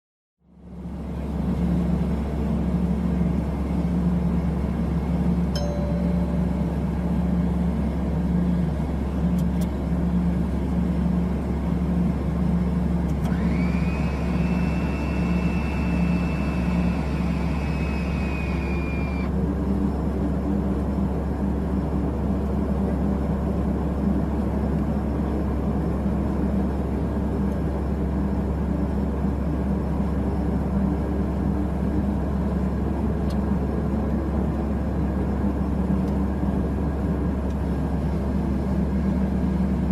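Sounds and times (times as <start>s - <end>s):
turboprop engines idling: 0.5s - 39.9s
motor whine: 13.1s - 19.8s.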